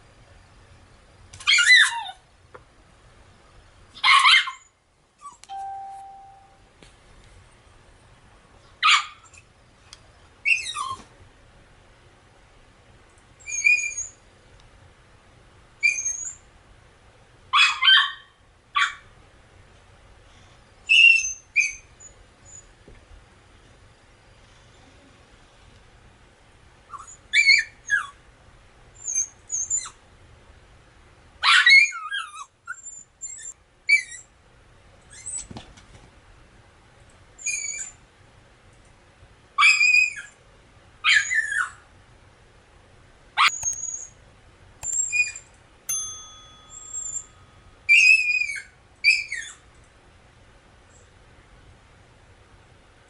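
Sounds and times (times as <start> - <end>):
dog yelping: 1.4 - 2.2, 4.0 - 5.4, 8.8 - 9.4, 10.4 - 11.1, 13.4 - 14.2, 15.8 - 16.4, 17.5 - 19.0, 20.9 - 21.9, 26.9 - 28.2, 31.4 - 34.3, 37.4 - 37.9, 39.6 - 40.4, 41.0 - 41.8, 47.9 - 49.6.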